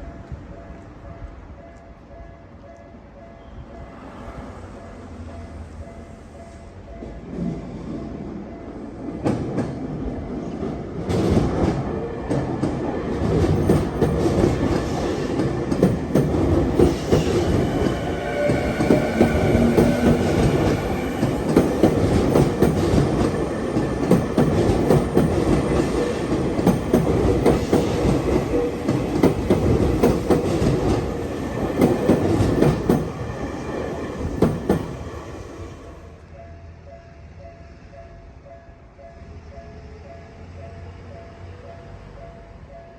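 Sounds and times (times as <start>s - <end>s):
train wheels clacking over rail joints: 11.0s - 35.1s.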